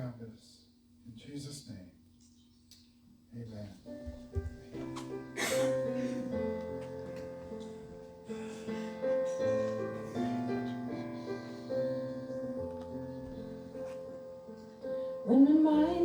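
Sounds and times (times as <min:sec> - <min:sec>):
piano playing slow chords: 0:03.9 - 0:16.0.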